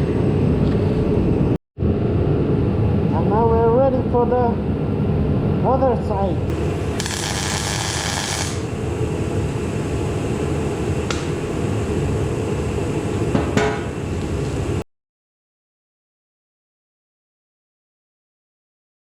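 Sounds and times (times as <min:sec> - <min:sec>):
heater running low rumble: 0:00.0 - 0:14.8.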